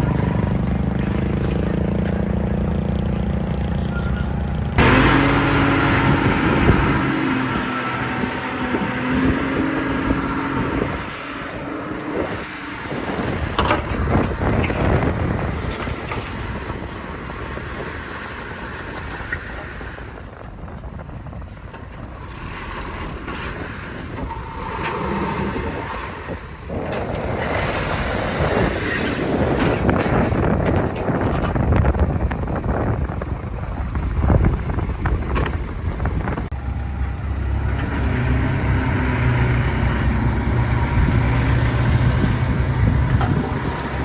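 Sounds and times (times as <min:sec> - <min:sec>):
diesel machinery engines working: 0:00.0 - 0:44.0.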